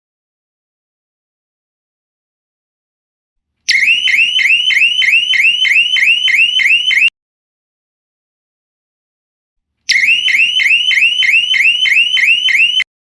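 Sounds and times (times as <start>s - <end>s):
electronic alarm siren whooping: 3.7s - 7.1s, 9.9s - 12.9s.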